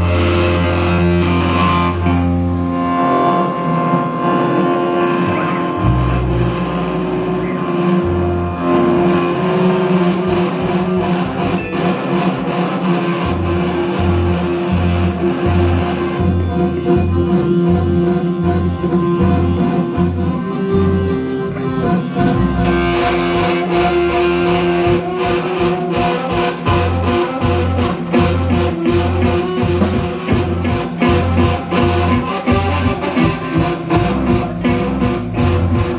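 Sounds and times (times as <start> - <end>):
live rock band playing: 0.0 - 35.9.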